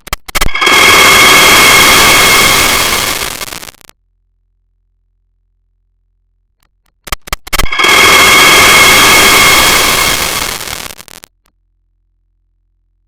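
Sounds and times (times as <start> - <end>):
crackling pops: 0.0 - 4.0, 6.6 - 11.5
hissing rush with whistle: 0.5 - 3.5, 7.6 - 10.9.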